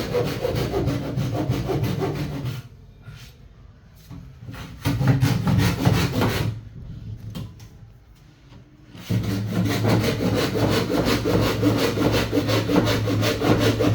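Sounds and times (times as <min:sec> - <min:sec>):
saw cutting wood: 0:00.0 - 0:02.6, 0:09.0 - 0:13.9.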